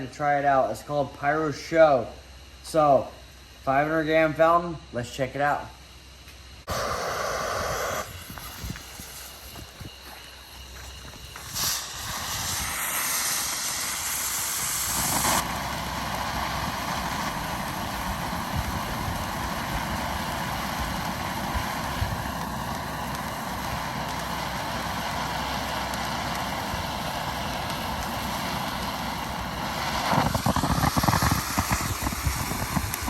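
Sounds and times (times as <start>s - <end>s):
firework crackles: 6.6s - 33.0s
firework fountain hissing: 6.6s - 33.0s.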